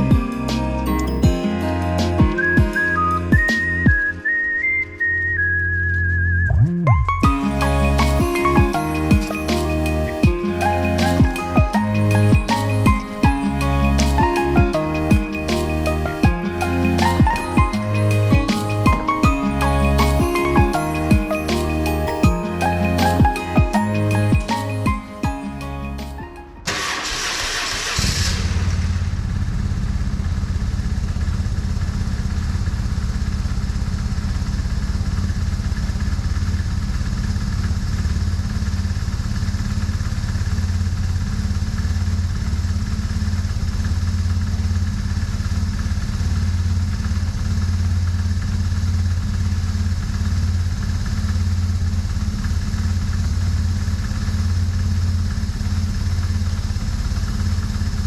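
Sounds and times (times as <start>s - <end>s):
starter motor whirr: 26.6s - 29.1s
motorcycle engine idling: 28.5s - 58.0s.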